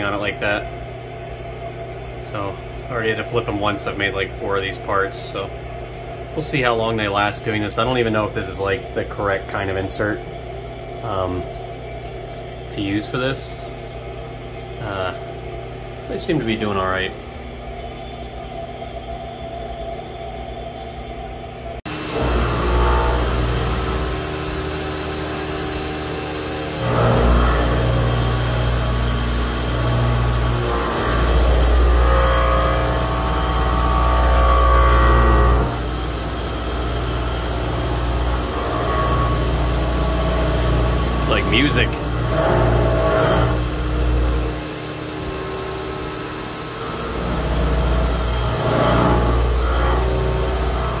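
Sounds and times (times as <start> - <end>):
milling machine cutting steel: 21.9 - 51.0.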